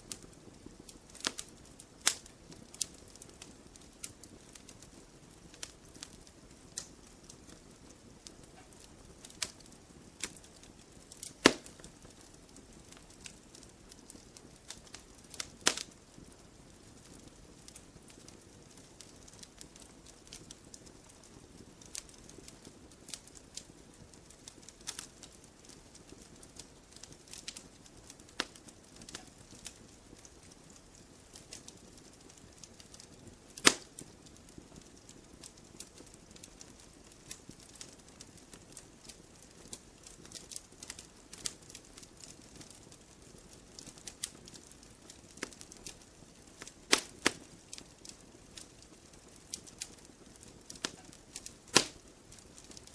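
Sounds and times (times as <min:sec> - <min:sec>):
campfire crackling and popping: 0:00.0 - 0:52.9
low steady hiss of fire: 0:00.0 - 0:52.9.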